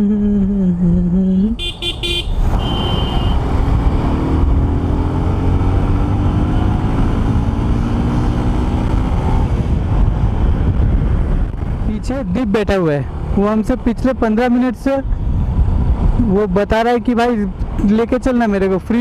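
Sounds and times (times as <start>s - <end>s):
road rumble: 0.0s - 19.0s
road traffic: 0.0s - 19.0s
wind: 0.0s - 19.0s
horn toots: 1.5s - 3.5s
engine accelerating: 2.4s - 10.6s.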